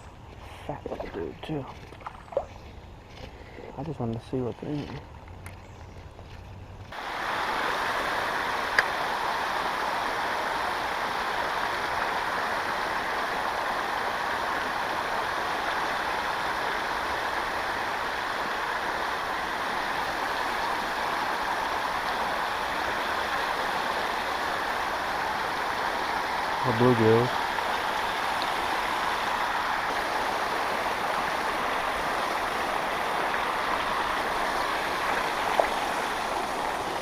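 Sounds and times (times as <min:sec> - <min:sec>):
creek water rushing: 0:00.0 - 0:06.3, 0:06.9 - 0:37.0.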